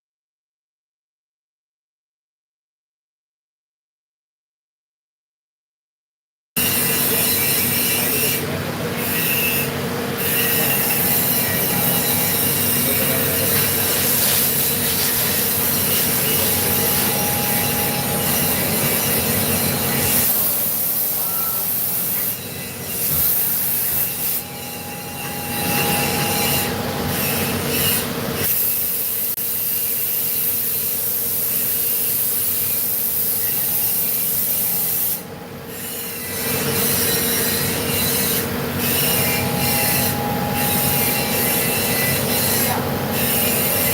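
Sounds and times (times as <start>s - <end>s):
machine grinding metal with squealing: 6.6s - 43.9s.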